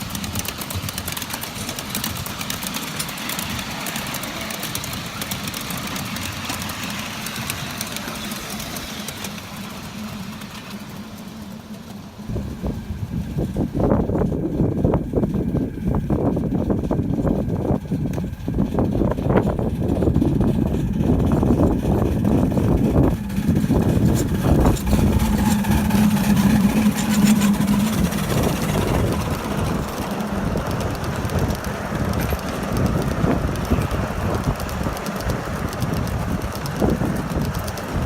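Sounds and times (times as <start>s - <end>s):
steam train running on track: 0.0s - 38.0s
wind buffeting microphone: 12.2s - 38.0s.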